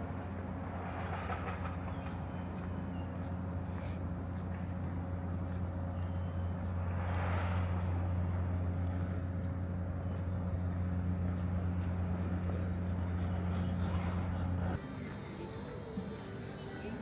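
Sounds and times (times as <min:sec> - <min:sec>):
vehicle engine droning: 0:00.0 - 0:17.0
rush of passing vehicle: 0:06.5 - 0:09.9.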